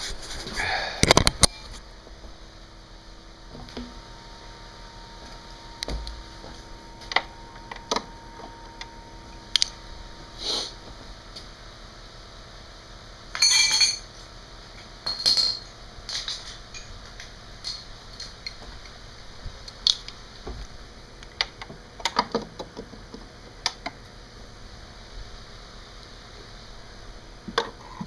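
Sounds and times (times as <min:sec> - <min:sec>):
metal tools rattling: 0:13.4 - 0:14.1, 0:15.1 - 0:17.0.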